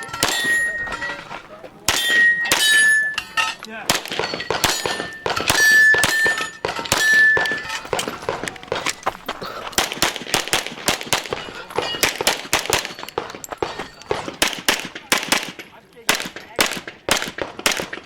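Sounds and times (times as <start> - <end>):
steel targets ringing: 0.0 - 8.3, 11.2 - 14.3
pistol firing rapid shots: 3.9 - 8.8, 9.7 - 13.4, 14.1 - 18.0.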